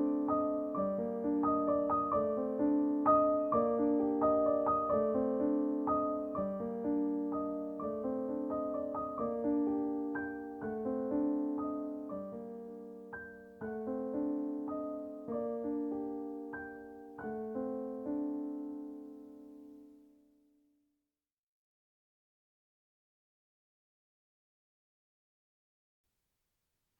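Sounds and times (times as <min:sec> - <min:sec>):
gentle solo piano piece: 0:00.0 - 0:20.2.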